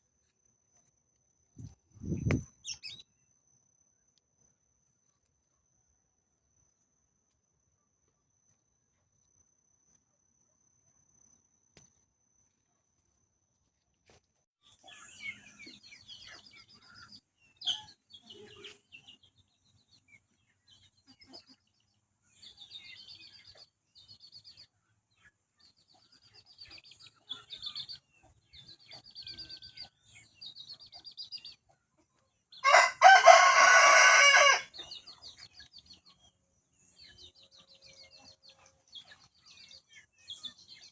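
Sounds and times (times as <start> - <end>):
small birds chirping: 1.5 - 3.4, 10.8 - 32.8, 34.7 - 40.9
rooster crowing: 32.6 - 34.7.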